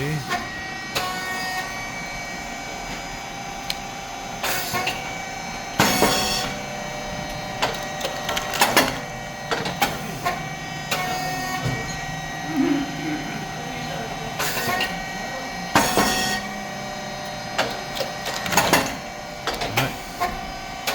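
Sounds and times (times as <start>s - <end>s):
machine motor humming: 0.0s - 20.9s
machine clicks and knocks: 7.6s - 10.0s, 17.6s - 19.9s.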